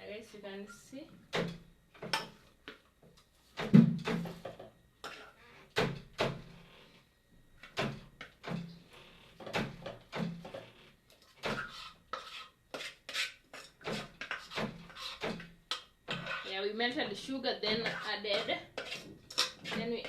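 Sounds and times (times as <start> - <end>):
spoon scraping a pot: 4.3 - 5.4, 10.5 - 20.0.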